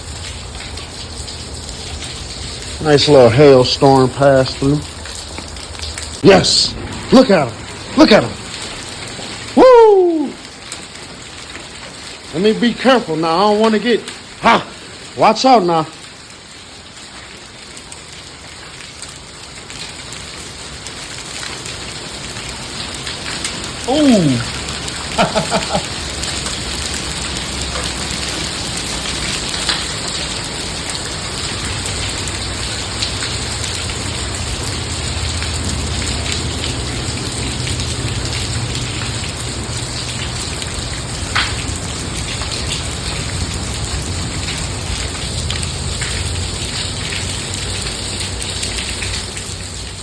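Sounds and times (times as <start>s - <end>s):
hail and rain hissing: 0.0s - 50.0s
hailstones ticking: 17.7s - 50.0s.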